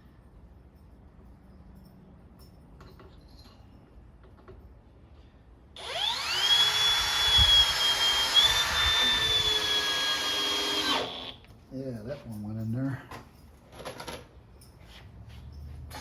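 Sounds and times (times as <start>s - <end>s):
cordless drill driving screw: 5.8s - 11.5s.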